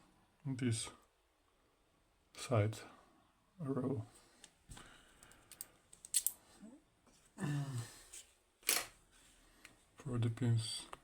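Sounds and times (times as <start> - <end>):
metal lock parts clicking and rattling: 5.4 - 6.4.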